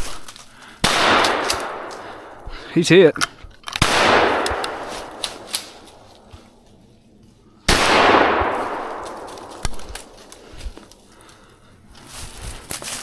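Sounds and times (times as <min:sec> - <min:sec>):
shotgun shots echoing: 0:00.8 - 0:06.3, 0:07.7 - 0:10.4.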